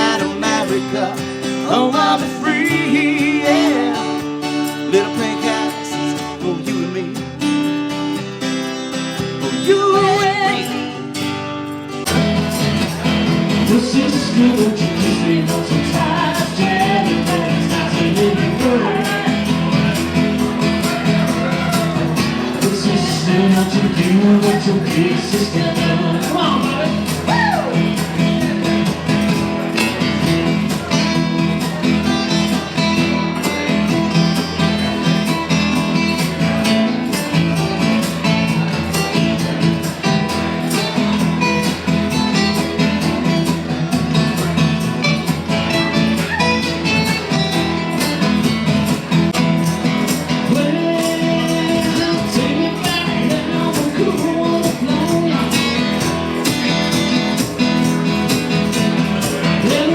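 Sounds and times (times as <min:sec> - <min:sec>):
band playing country rock: 0:00.0 - 0:59.9
guitars: 0:00.0 - 0:59.9
steady drum beat: 0:12.1 - 0:59.9.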